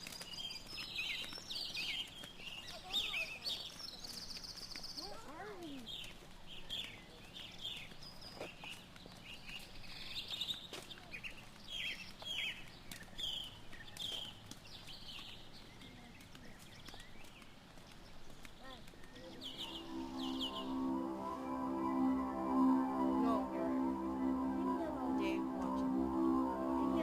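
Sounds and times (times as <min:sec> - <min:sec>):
small birds chirping: 0:00.0 - 0:23.6.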